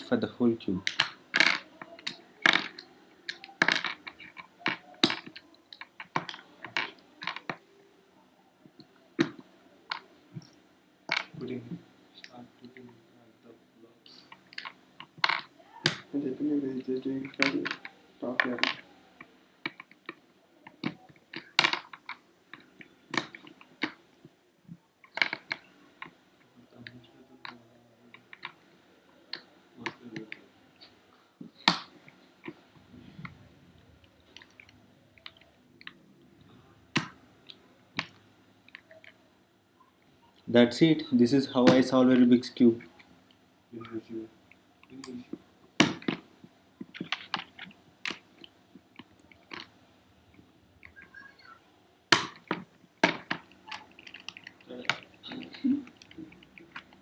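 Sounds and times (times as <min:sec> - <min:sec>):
plastic puzzle cube pieces clicking: 0:00.8 - 0:07.6, 0:52.2 - 0:57.0.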